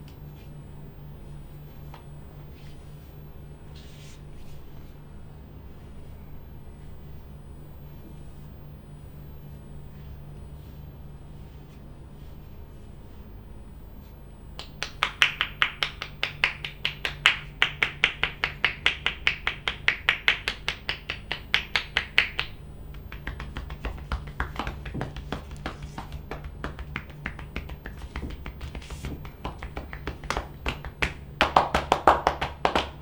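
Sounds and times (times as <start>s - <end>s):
hands slapping a back: 14.6s - 33.0s
light fast tapping on a back: 14.6s - 33.0s.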